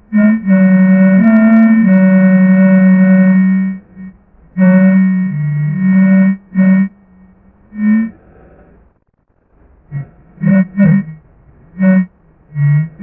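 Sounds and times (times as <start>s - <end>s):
synthesized monster call: 0.2s - 8.8s, 9.9s - 13.0s
short electronic blips: 4.8s - 8.2s.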